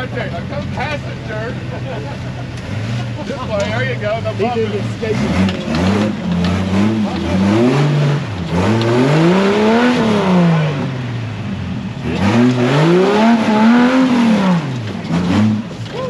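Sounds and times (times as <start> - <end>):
off-road vehicle engine revving: 0.0 - 16.0.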